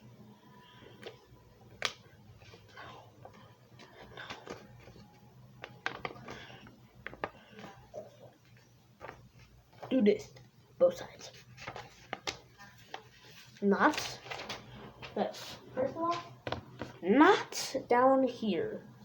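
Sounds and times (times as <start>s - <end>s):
paper snapping: 1.0s - 2.0s.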